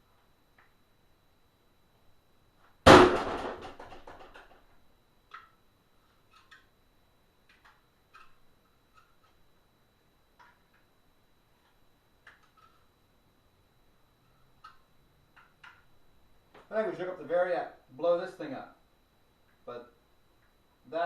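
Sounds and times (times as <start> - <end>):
loud bang with rattling clatter: 2.9 - 4.5.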